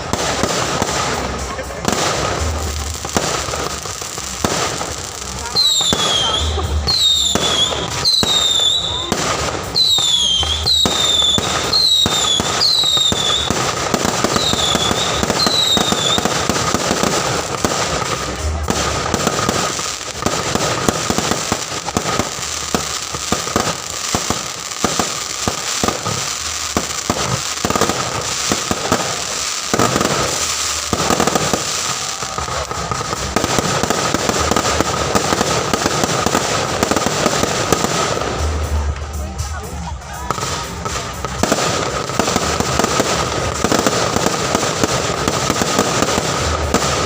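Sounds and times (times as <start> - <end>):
fireworks bangs and crackles: 0.0 - 47.0
whistling firework chirps: 5.6 - 16.3.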